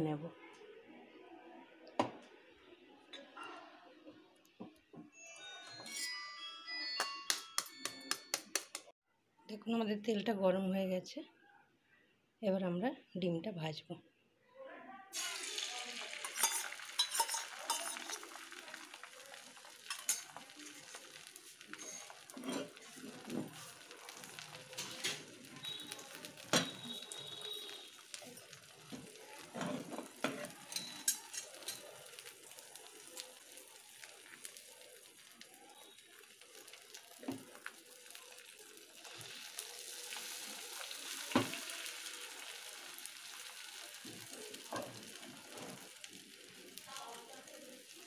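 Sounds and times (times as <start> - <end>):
eggs sizzling in hot oil: 15.1 - 48.0
metal utensil clinking on pan: 16.0 - 18.5, 19.8 - 23.6, 24.3 - 25.9, 26.5 - 27.0, 28.9 - 32.3.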